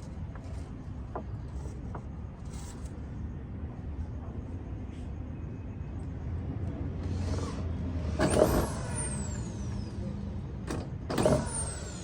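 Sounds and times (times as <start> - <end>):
power tool motor whining: 7.0 - 10.2, 11.0 - 12.0.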